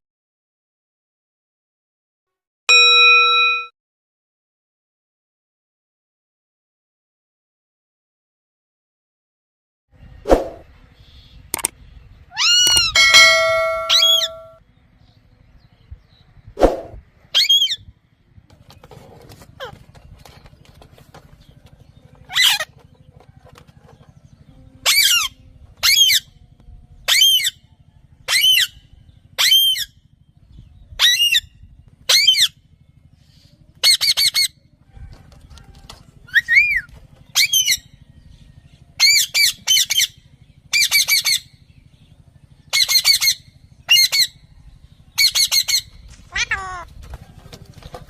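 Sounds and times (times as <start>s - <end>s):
parrot squawking: 12.3s - 14.6s, 22.3s - 22.7s, 32.1s - 32.6s, 45.2s - 46.9s.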